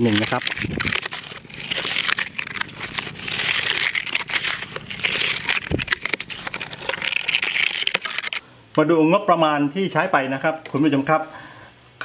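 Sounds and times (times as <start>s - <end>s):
tool scraping wet mortar: 0.0s - 8.4s.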